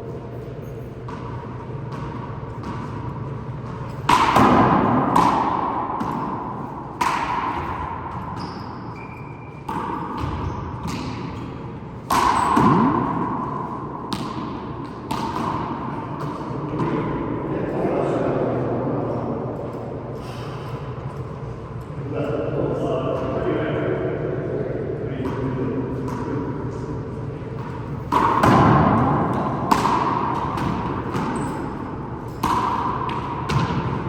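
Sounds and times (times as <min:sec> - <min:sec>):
handball smacks echoing: 0:01.0 - 0:17.2, 0:25.2 - 0:26.9, 0:27.5 - 0:34.0.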